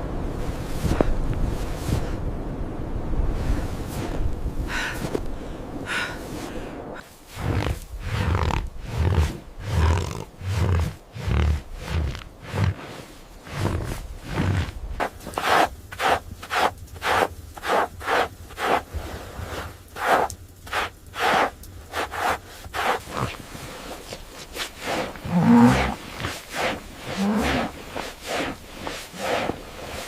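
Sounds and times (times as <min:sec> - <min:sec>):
footsteps crunching through snow: 0:06.2 - 0:30.0.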